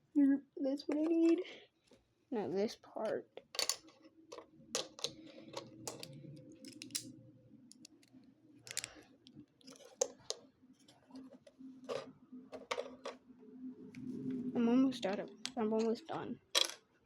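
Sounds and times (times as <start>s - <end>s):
plastic bricks clicking: 3.6s - 7.1s, 7.7s - 8.1s, 8.7s - 9.0s, 9.7s - 10.4s, 15.4s - 16.9s.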